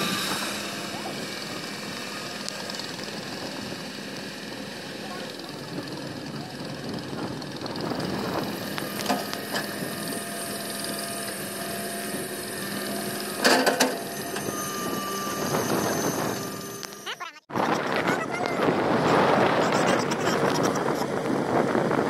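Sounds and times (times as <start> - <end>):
excavator engine running: 0.0 - 22.0.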